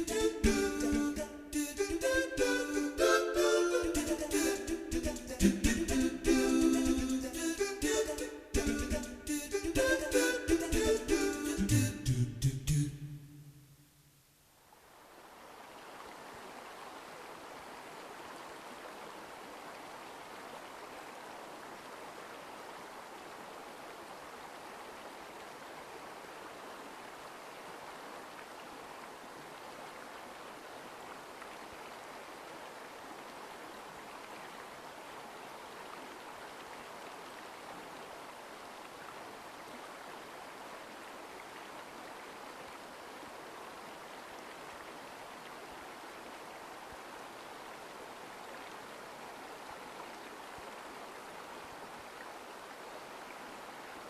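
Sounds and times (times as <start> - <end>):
mountain stream water rushing: 0.0 - 11.6, 14.7 - 54.0.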